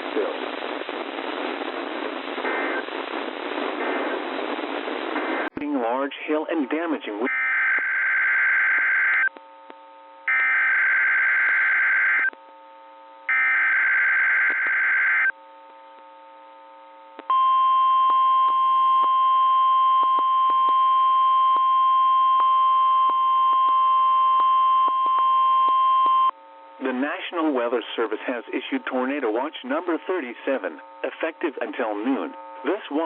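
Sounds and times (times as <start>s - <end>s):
static ticks: 17.1s - 17.3s.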